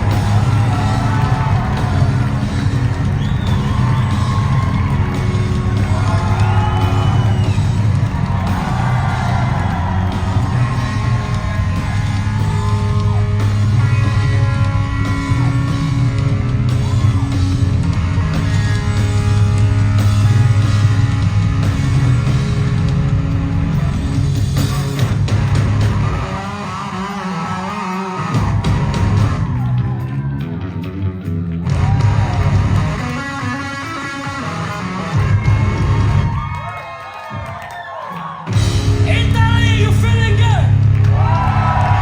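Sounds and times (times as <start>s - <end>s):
heavy bass and drums: 0.0s - 36.5s, 38.5s - 42.0s
electric guitar: 0.0s - 36.7s.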